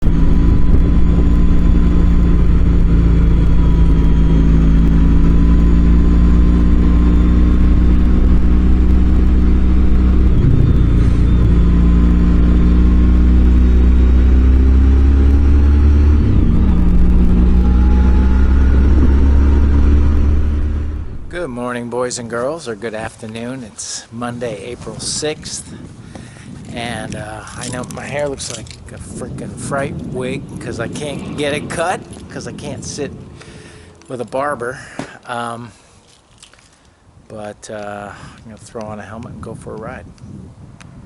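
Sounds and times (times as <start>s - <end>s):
motorcycle engine cruising: 0.0s - 22.4s.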